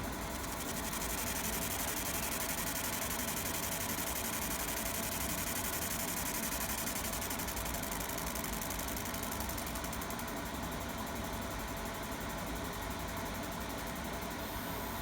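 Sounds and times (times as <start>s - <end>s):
laser machine humming and buzzing: 0.1s - 10.4s, 14.3s - 15.0s.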